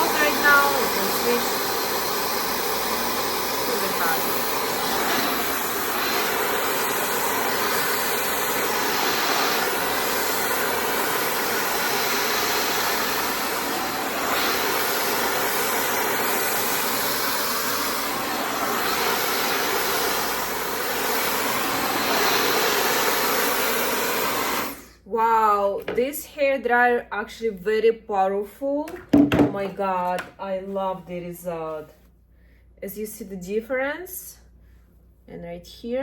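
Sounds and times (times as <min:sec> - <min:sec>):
hair dryer whine and air rush: 0:00.0 - 0:24.9.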